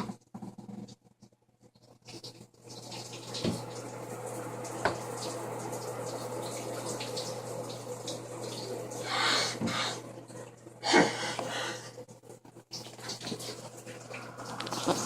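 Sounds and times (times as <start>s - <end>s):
shower spray running: 2.1s - 10.2s, 12.7s - 15.0s.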